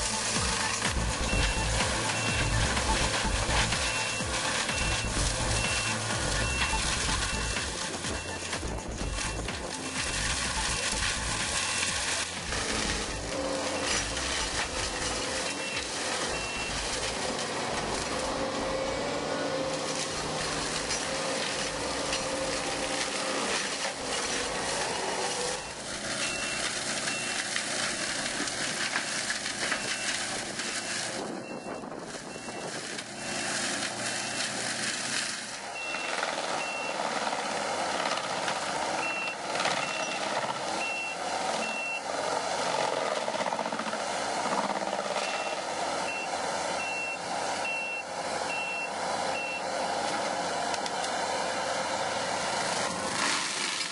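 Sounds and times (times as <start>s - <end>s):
reversing alarm beeps: 0.0s - 17.1s, 24.2s - 27.5s, 29.7s - 33.6s, 35.8s - 37.0s, 39.0s - 40.2s, 40.8s - 42.1s, 45.2s - 49.7s
forestry mulcher grinding: 0.0s - 53.9s.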